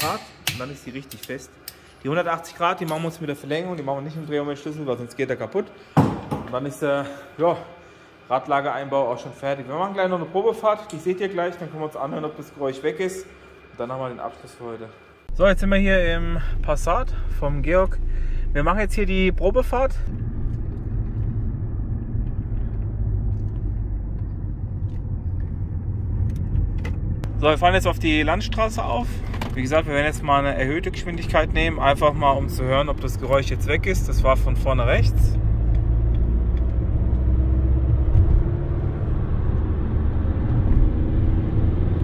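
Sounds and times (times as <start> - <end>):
road and engine rumble in car: 15.3 - 42.0.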